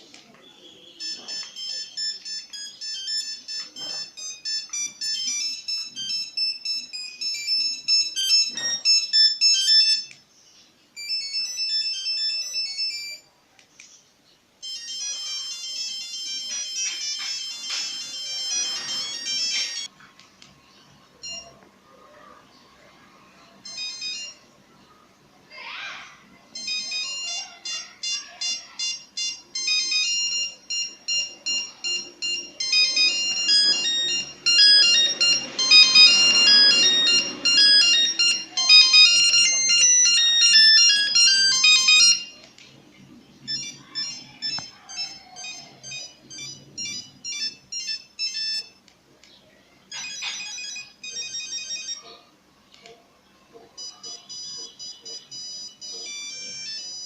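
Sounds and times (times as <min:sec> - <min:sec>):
mobile phone ringtone beeping: 0:00.6 - 0:10.2, 0:11.0 - 0:13.3, 0:14.6 - 0:19.9, 0:21.2 - 0:21.6, 0:23.4 - 0:24.6, 0:26.4 - 0:42.5, 0:43.4 - 0:48.8, 0:49.9 - 0:52.2, 0:53.8 - 0:57.0.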